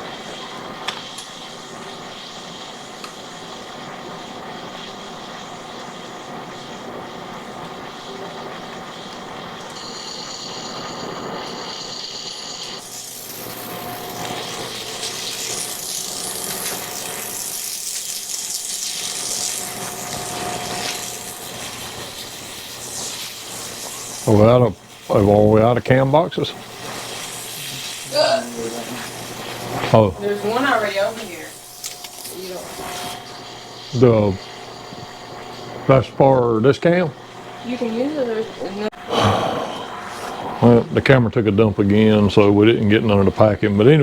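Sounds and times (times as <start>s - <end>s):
loud steady hiss: 0.0s - 44.0s
machine shop running noise: 0.0s - 44.0s
high whine: 24.0s - 43.2s.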